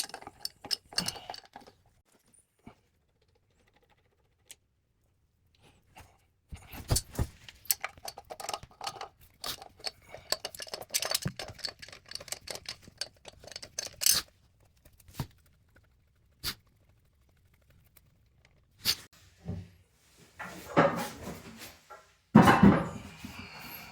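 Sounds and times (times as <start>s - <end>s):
metal tools clinking and scraping: 0.0s - 1.8s, 6.8s - 14.2s.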